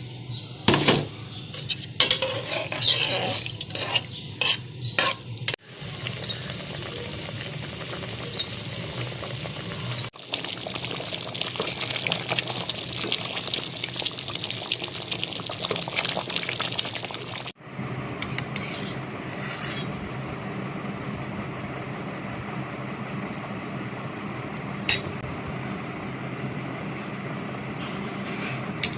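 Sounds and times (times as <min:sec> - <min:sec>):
utensil scraping a pot: 0:00.7 - 0:05.6, 0:18.2 - 0:20.0.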